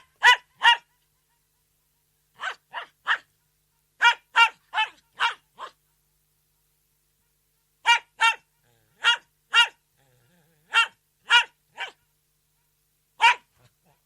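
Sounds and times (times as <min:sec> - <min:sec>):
dog barking: 0:00.0 - 0:01.0, 0:02.4 - 0:03.3, 0:04.0 - 0:05.8, 0:07.8 - 0:09.8, 0:10.7 - 0:12.0, 0:13.2 - 0:14.0.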